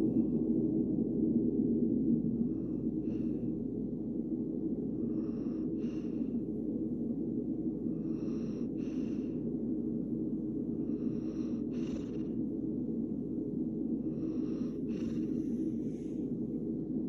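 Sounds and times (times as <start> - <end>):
steady low hum: 0.0 - 17.0
dog breathing with wheeze: 2.4 - 3.6, 4.9 - 6.5, 7.8 - 9.6, 10.7 - 12.7, 14.0 - 16.6.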